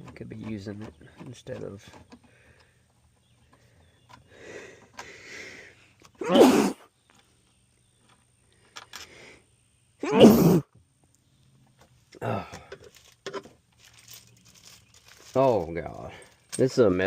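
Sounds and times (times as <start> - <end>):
short breaths drawn in: 3.6 - 6.0, 8.5 - 9.6
man sneezing: 6.2 - 6.8, 10.0 - 10.7.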